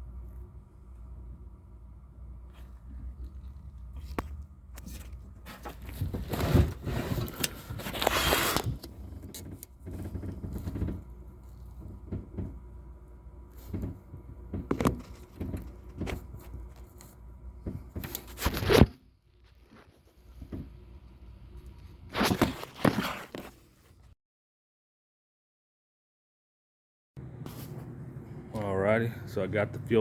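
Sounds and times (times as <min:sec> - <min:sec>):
steady low hum: 0:00.0 - 0:08.0, 0:08.6 - 0:18.2, 0:27.2 - 0:30.0.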